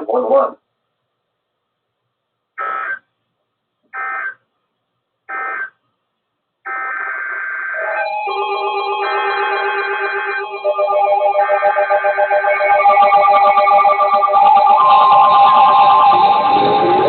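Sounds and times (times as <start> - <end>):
electronic data bursts: 2.6 - 3.1, 6.7 - 17.0
steady electronic music: 7.8 - 17.0.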